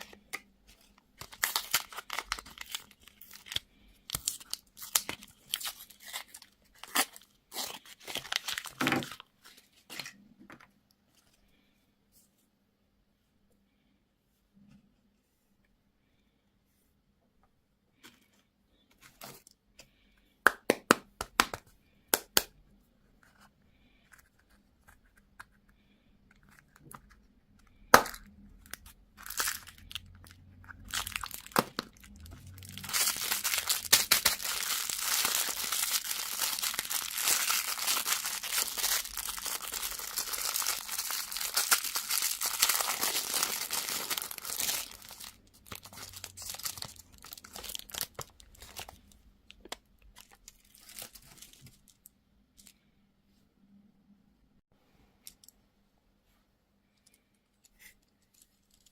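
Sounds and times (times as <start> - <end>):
candy wrapper crinkling and tearing: 0.0 - 9.3, 27.9 - 52.8, 58.3 - 58.9.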